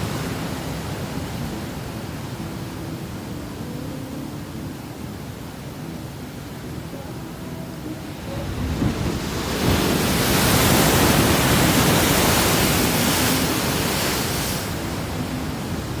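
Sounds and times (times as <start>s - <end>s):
wave breaking on beach: 0.0s - 2.5s, 8.2s - 16.0s.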